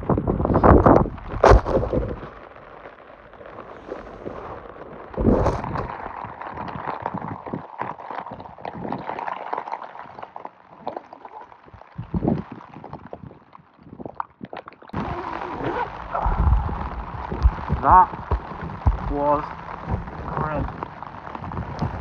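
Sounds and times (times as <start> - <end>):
rain pattering on tent fabric: 0.0 - 22.0
rustling of wet gear: 0.4 - 22.0
heavy thumps: 15.0 - 22.0.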